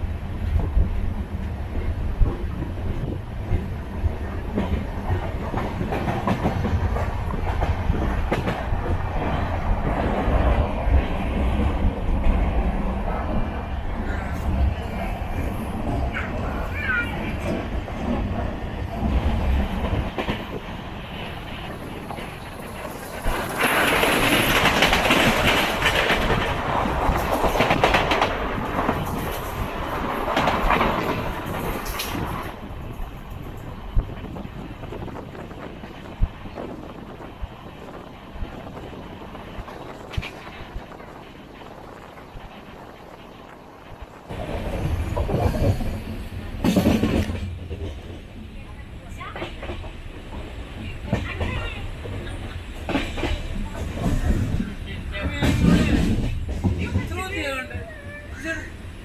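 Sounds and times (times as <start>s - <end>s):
train coach rumbling on rails: 0.0s - 59.0s
wheels clicking over rail joints: 21.4s - 36.8s, 39.6s - 48.4s.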